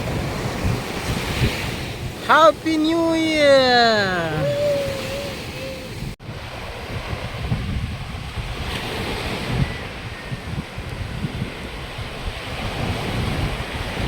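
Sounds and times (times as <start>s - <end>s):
sea surf washing: 0.0s - 6.2s
wind buffeting microphone: 4.4s - 14.0s.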